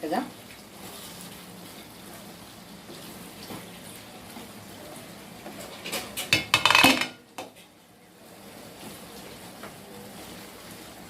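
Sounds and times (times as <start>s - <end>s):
faint steady background noise: 0.0s - 11.0s.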